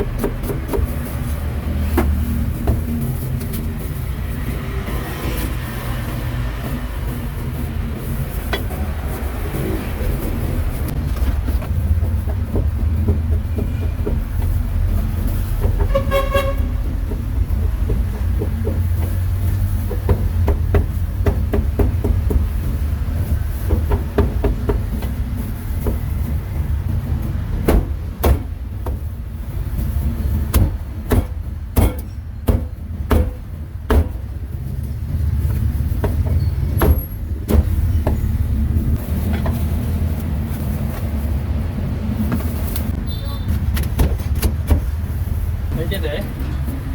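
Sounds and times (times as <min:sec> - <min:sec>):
street traffic rumble: 0:00.0 - 0:46.9
vehicle horn toot: 0:15.8 - 0:16.9, 0:43.0 - 0:43.6.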